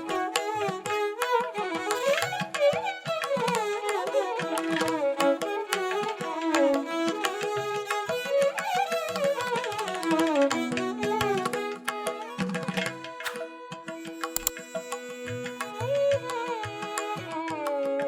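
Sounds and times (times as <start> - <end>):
bowed string melody: 0.0 - 18.0
hand drum strokes: 9.7 - 18.0.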